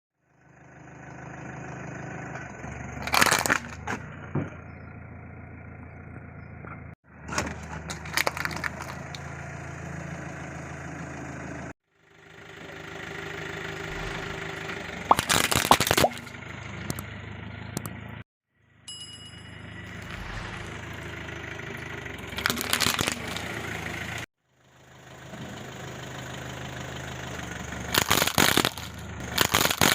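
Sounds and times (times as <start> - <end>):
car engine running under load: 0.2 - 18.8, 19.4 - 29.9
tyre crushing objects: 7.9 - 9.1, 28.0 - 29.9.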